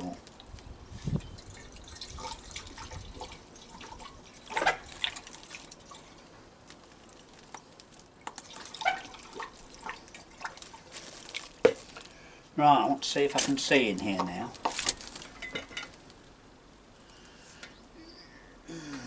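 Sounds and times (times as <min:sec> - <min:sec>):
liquid trickling through a funnel: 0:00.4 - 0:12.2
liquid splashes: 0:01.2 - 0:12.0.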